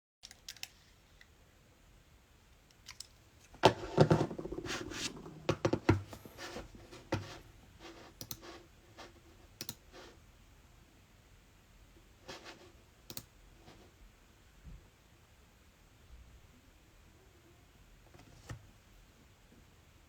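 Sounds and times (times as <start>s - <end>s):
scratchy rustling on hard surface: 3.6s - 9.3s.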